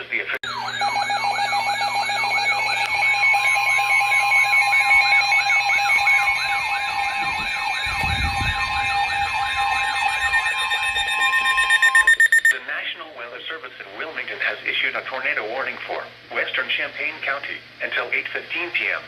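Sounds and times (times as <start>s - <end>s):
emergency alert tone warbling: 0.4s - 12.6s.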